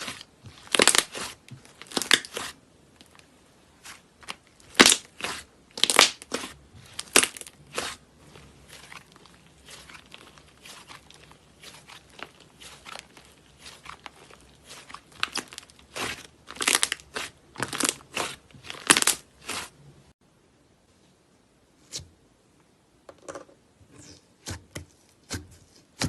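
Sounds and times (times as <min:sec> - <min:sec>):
crunchy slime crackling: 0:00.0 - 0:19.8.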